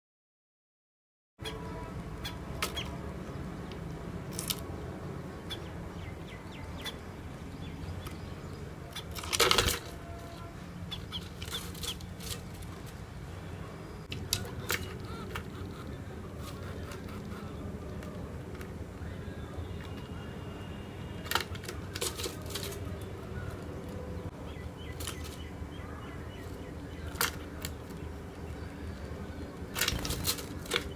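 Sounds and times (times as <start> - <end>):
low steady hum: 1.4 - 30.9
sparrows chirping: 1.4 - 30.9.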